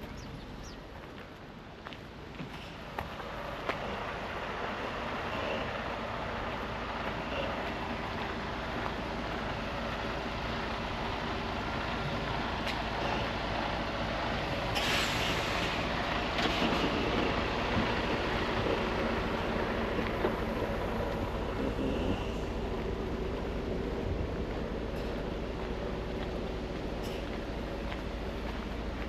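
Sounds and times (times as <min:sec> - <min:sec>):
rumble of passing vehicles: 0:00.0 - 0:29.0
short sharp hiss: 0:14.7 - 0:15.9.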